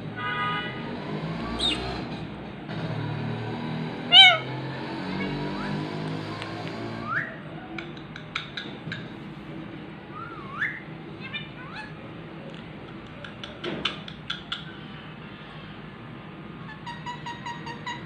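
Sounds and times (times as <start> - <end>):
parrot whistling: 1.6 - 1.9, 4.1 - 4.5, 10.1 - 10.9
sharp clicks: 12.5 - 14.8.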